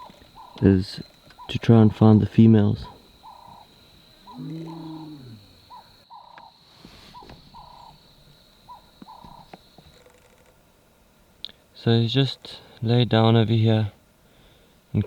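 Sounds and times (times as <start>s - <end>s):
bird two-part call: 0.0s - 1.6s, 3.2s - 8.0s, 8.6s - 10.0s
lion low contact call: 2.9s - 5.9s.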